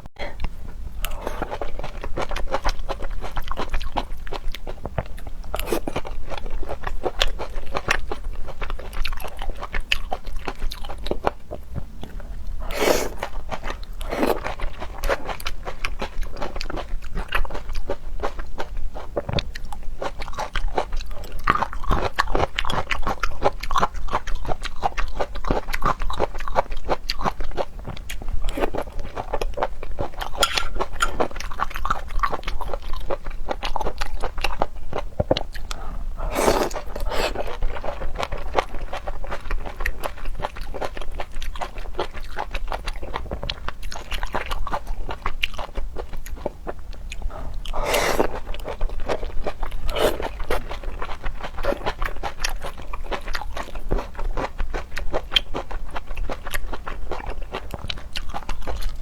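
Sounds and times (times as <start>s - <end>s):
chewing and crunching: 0.4s - 59.0s
wet mouth clicks: 30.4s - 31.2s.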